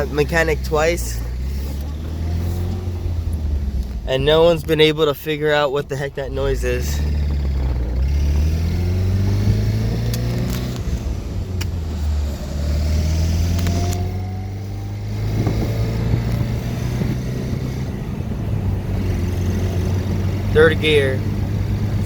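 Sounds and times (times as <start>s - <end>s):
rattling noise: 0.0s - 12.3s
car engine accelerating: 0.0s - 22.0s.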